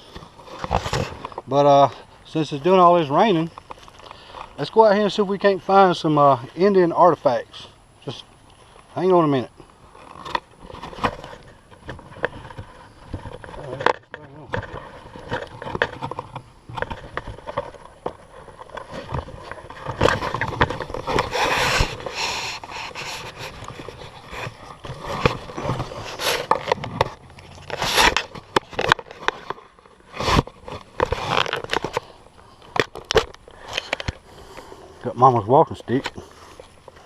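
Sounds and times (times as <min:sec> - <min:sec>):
knocks and scrapes of handling gear: 0:00.0 - 0:01.5, 0:10.0 - 0:34.2.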